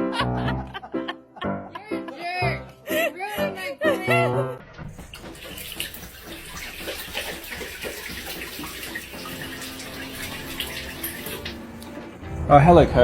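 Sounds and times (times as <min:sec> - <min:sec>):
running water: 0:04.7 - 0:12.5.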